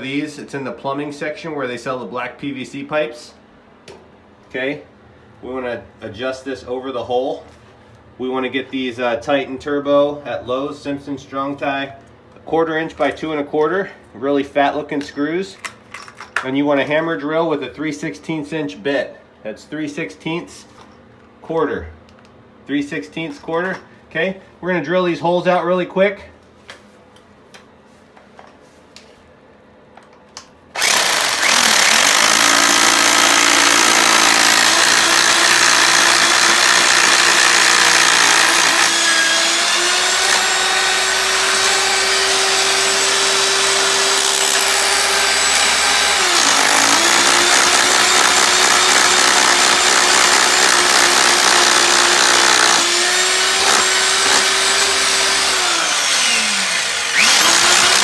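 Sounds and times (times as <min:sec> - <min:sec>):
hammer drill drilling: 0:30.8 - 0:58.0.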